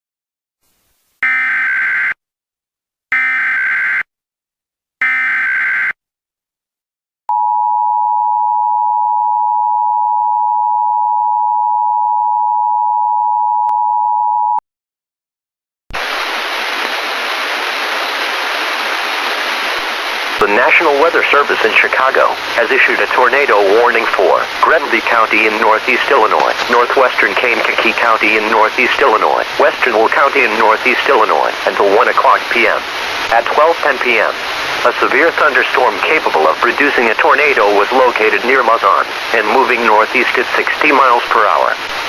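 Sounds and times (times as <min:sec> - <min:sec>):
two-tone attention signal: 0:05.0 - 0:06.0
static hiss: 0:16.0 - 0:42.0.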